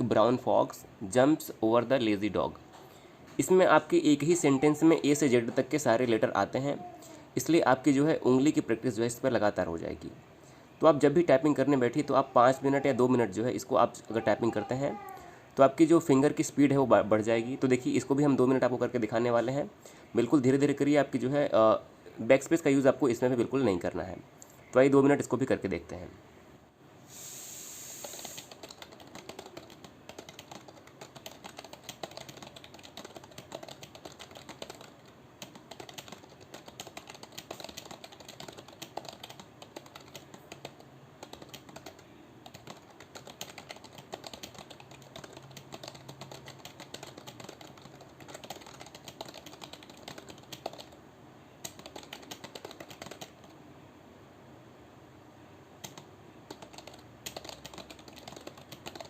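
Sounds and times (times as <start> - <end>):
computer keyboard typing: 28.0 - 51.0, 51.6 - 53.6, 55.8 - 59.0.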